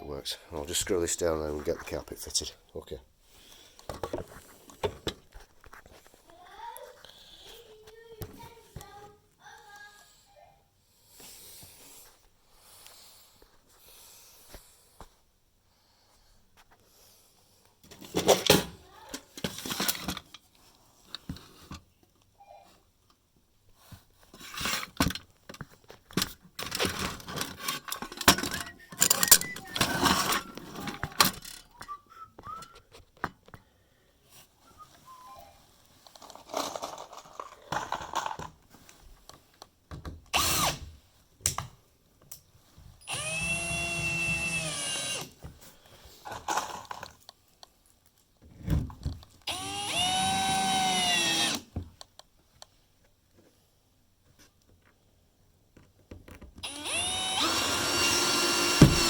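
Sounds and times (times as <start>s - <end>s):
knocks and handling: 3.7s - 7.0s, 23.9s - 33.7s
power drill driving screws: 28.3s - 31.1s, 40.3s - 40.9s, 43.0s - 45.4s, 49.4s - 51.7s, 56.6s - 59.0s.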